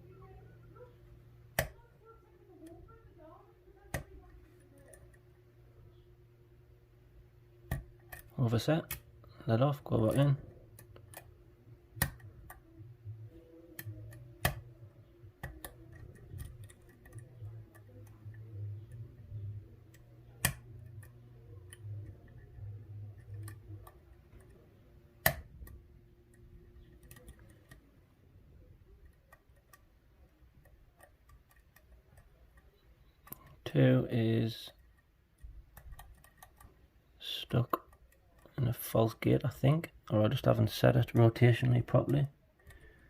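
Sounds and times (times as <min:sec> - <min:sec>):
faint low hum: 0:00.0 - 0:43.0
lock pick clicking on pins: 0:13.6 - 0:24.6, 0:25.2 - 0:27.9, 0:34.8 - 0:36.7.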